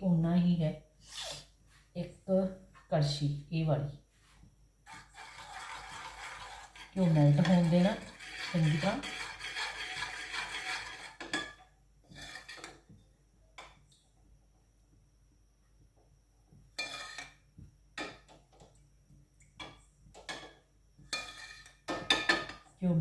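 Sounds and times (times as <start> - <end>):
utensil scraping a pan: 4.8 - 12.8, 16.8 - 17.4, 21.1 - 22.6.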